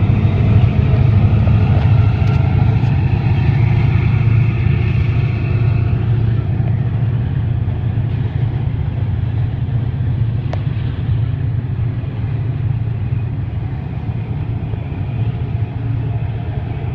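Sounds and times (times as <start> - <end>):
diesel locomotive rumbling: 0.0 - 16.9.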